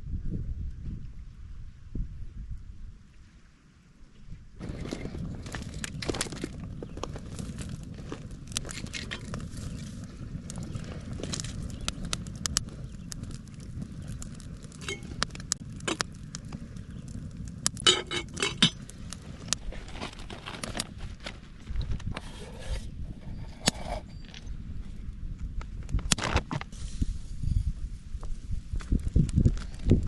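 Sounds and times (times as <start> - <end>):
bonfire crackling and popping: 4.6 - 22.3, 23.6 - 30.0.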